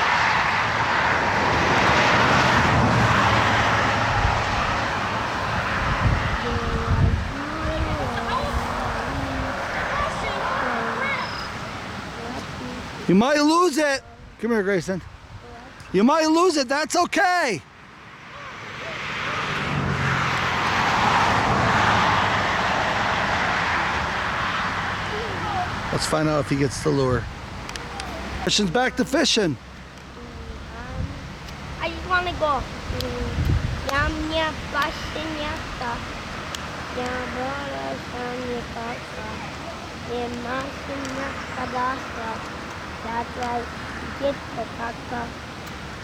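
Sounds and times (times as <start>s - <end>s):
river water over rapids: 0.0s - 14.8s, 27.4s - 46.0s
loud steady rushing noise: 0.0s - 15.6s, 17.8s - 46.0s.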